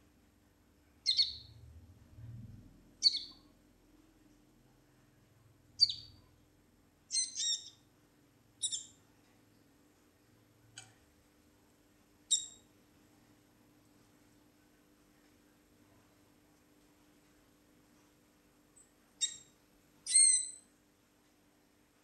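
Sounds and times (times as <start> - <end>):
small bird chirping: 1.0 - 1.6, 3.0 - 3.5, 5.8 - 6.3, 7.1 - 7.8, 8.6 - 9.0, 12.3 - 12.7, 18.8 - 20.7.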